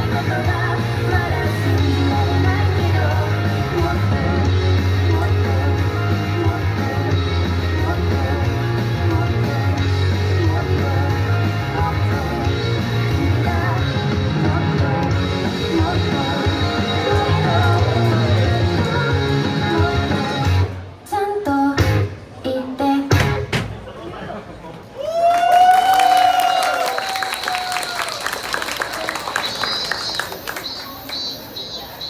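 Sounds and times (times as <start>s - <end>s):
song with singing and band: 0.0s - 23.7s.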